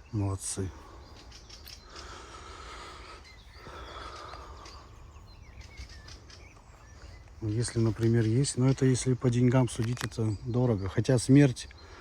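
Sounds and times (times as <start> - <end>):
light ticks: 8.7 - 10.4.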